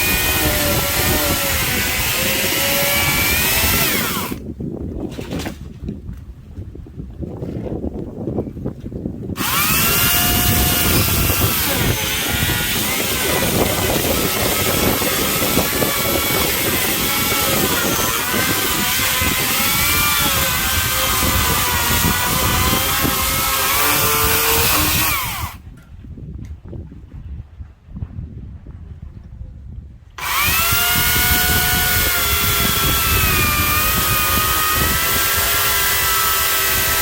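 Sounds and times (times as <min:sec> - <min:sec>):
electric chainsaw cutting log: 0:00.0 - 0:04.4, 0:09.4 - 0:25.6, 0:30.2 - 0:37.0.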